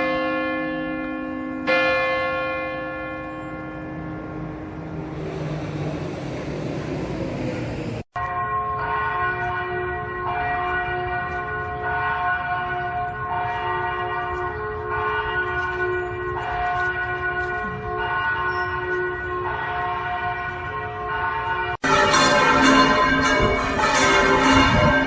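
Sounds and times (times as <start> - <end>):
church bells ringing: 0.0 - 5.4, 8.1 - 25.0
rushing noise: 4.4 - 8.1.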